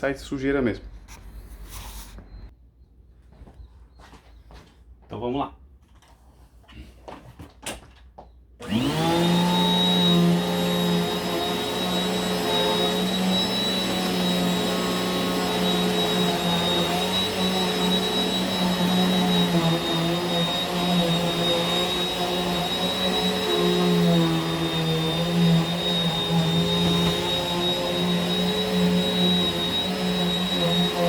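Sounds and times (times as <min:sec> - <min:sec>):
vacuum cleaner motor whining: 0:08.6 - 0:31.0.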